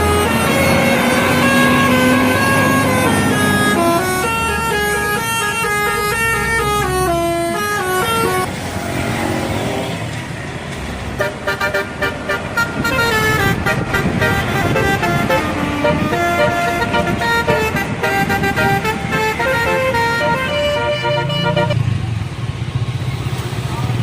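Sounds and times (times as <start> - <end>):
bus horn playing a tune: 0.0 - 8.5, 11.2 - 21.8
horn stuttering rapid notes: 11.2 - 21.8.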